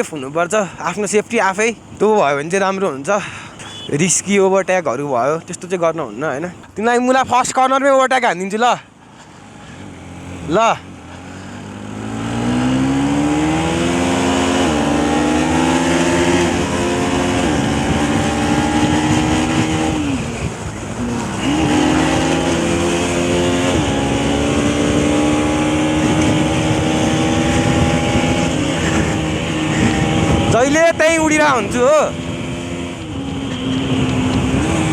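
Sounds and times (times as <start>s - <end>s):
motorcycle engine accelerating: 9.4s - 34.9s.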